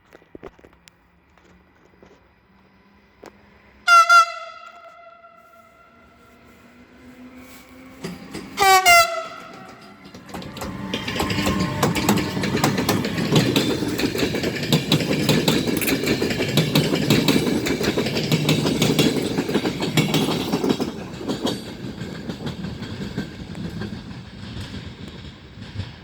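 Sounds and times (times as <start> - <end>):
train rumble: 0.0 - 26.0
wheels clicking over rail joints: 7.1 - 26.0.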